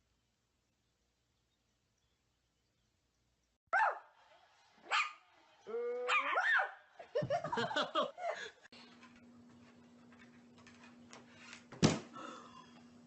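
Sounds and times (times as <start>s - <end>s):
person laughing: 7.0s - 8.7s.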